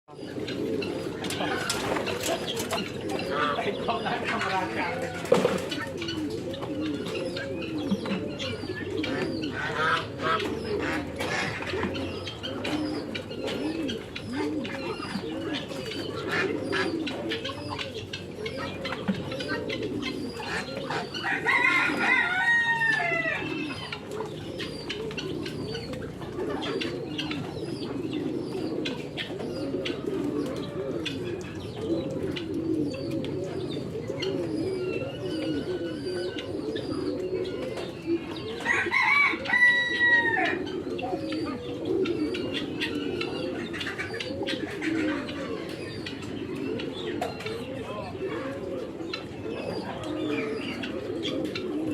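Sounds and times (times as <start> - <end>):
pigeons cooing: 0.1 - 51.9
rooster crowing: 21.2 - 23.5, 38.6 - 40.6.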